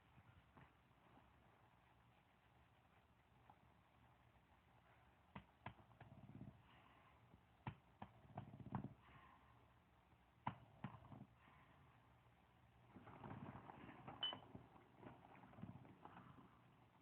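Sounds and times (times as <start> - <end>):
pet snoring faintly: 4.7 - 9.7, 12.9 - 17.0.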